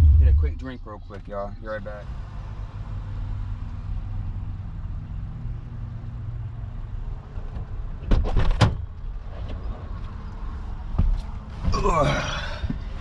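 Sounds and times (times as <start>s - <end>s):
car engine idling: 0.0s - 1.4s.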